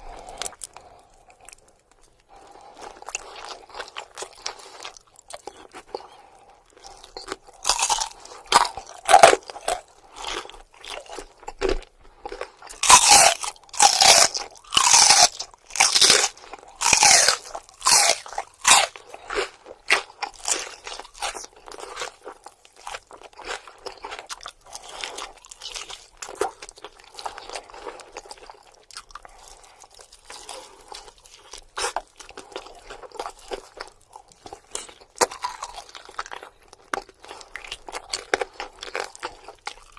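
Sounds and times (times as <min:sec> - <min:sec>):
chewing: 0:00.0 - 0:39.9
crunchy bites into chicken wings: 0:12.7 - 0:19.0.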